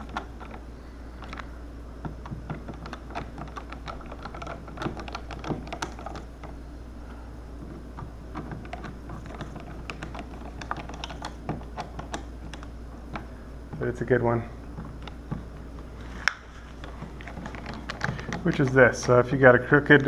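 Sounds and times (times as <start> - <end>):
plastic switch parts handled: 0.0 - 0.6, 1.2 - 6.6, 7.6 - 13.8, 16.1 - 19.2
steady low hum: 0.0 - 20.0.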